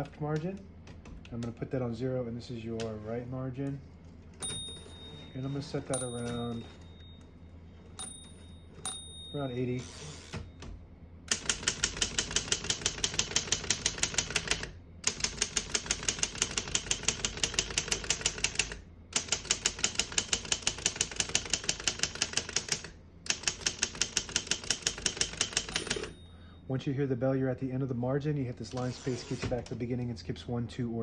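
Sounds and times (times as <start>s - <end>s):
manual typewriter typing: 11.3s - 26.2s.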